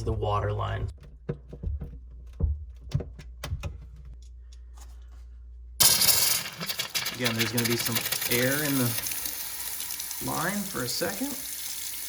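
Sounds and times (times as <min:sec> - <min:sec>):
water filter knocks and clicks: 0:00.8 - 0:04.1
faucet water rushing: 0:05.8 - 0:12.0.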